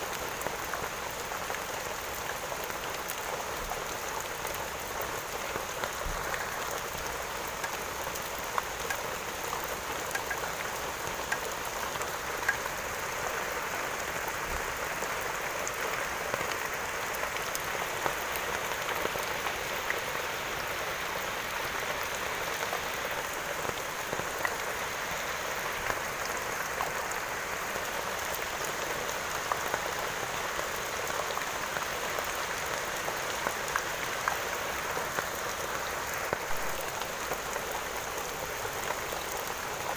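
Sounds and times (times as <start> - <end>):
steady rain hiss: 0.0 - 39.9
raindrop ticks: 5.8 - 13.1.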